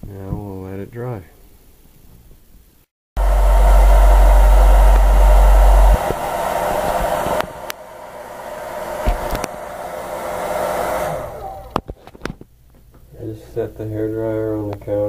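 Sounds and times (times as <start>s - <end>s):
air buffeting microphone: 3.2s - 7.7s
hair dryer blowing: 3.2s - 11.9s.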